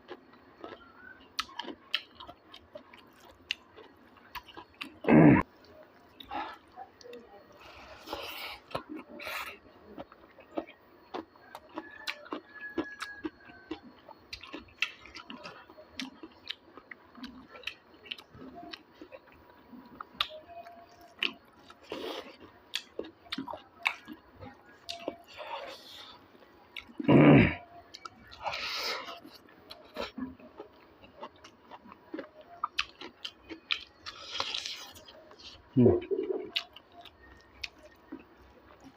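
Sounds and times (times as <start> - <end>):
close-up chewing and eating: 0.0 - 38.9.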